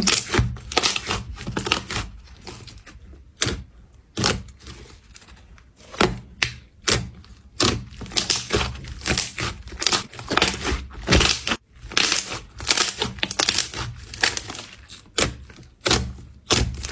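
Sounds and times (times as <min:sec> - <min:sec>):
slime squishing and popping: 0:05.9 - 0:16.9.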